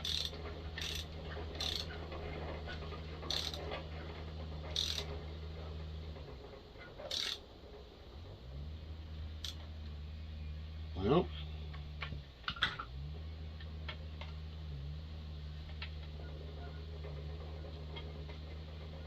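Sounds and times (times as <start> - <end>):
ratchet handle clicking: 0.0 - 2.0, 3.3 - 3.8, 4.7 - 5.1, 7.0 - 7.4, 9.4 - 9.6.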